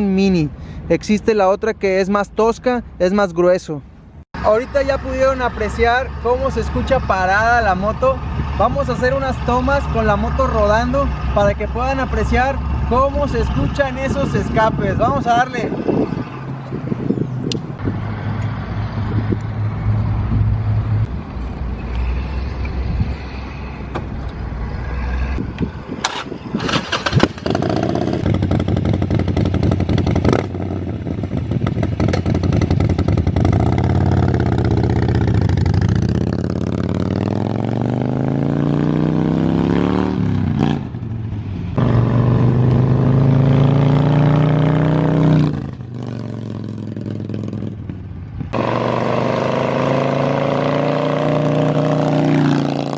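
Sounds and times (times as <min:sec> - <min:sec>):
motorcycle engine revving loud: 0:26.1 - 0:41.0, 0:41.8 - 0:47.9, 0:48.5 - 0:52.9.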